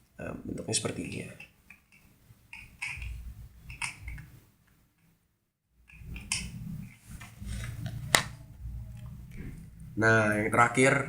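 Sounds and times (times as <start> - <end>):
metal lock picks clicking: 2.5 - 3.1.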